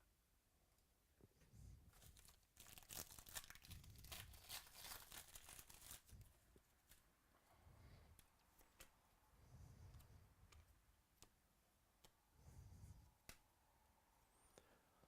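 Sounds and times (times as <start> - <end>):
card packaging crinkling and tearing: 1.9 - 7.0.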